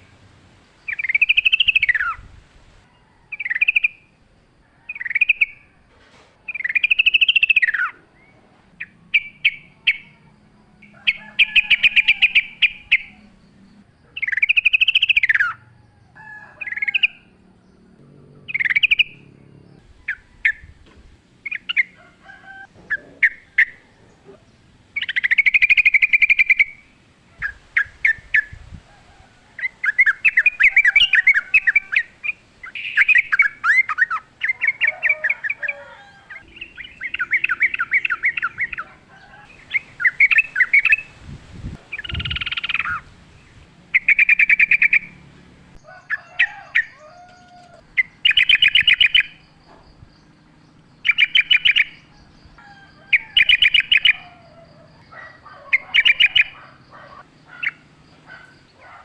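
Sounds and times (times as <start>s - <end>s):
bulbuls singing bubbly phrases: 21.4s - 28.9s, 29.5s - 45.8s.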